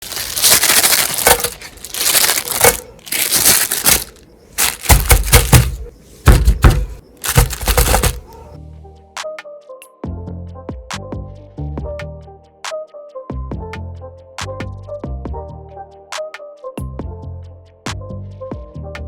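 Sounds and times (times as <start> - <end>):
music: 6.3 - 19.0.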